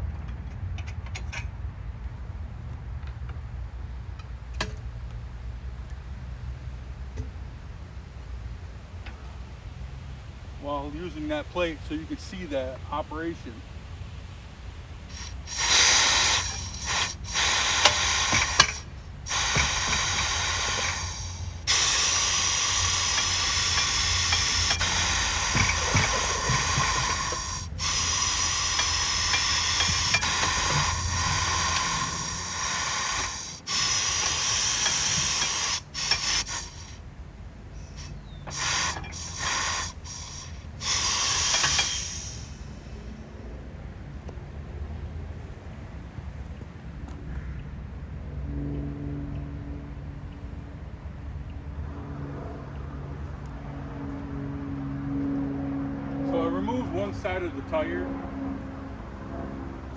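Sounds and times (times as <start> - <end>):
tire changer whirring: 0.0 - 47.8, 52.7 - 59.2
steady low hum: 0.0 - 59.9
ratchet clicks: 15.1 - 37.0, 37.8 - 42.7.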